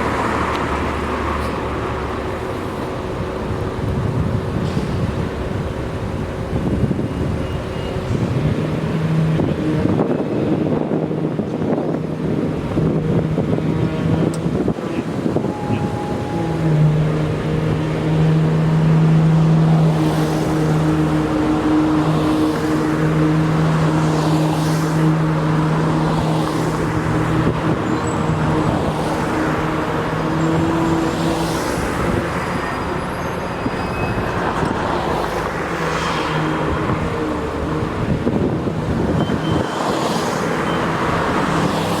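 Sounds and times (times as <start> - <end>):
steady engine hum: 0.0 - 33.8, 34.4 - 42.0
cars passing: 0.0 - 42.0.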